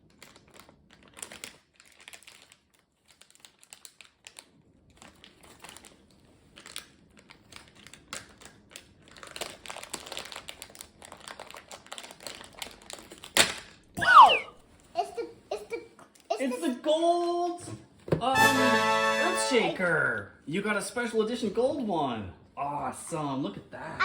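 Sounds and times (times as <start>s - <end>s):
plastic bag crinkling: 0.0s - 13.4s
plastic being torn open: 0.0s - 13.8s.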